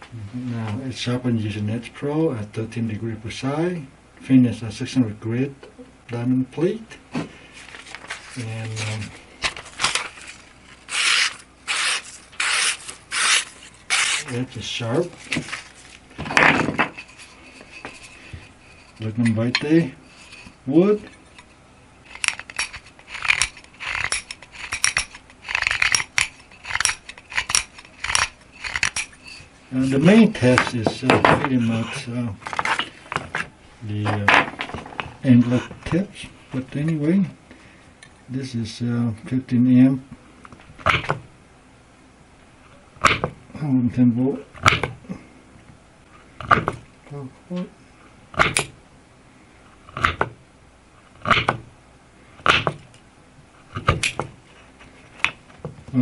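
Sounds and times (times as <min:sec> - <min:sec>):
knife blade scraping wood: 0:10.8 - 0:14.4, 0:16.8 - 0:21.5, 0:22.1 - 0:30.0.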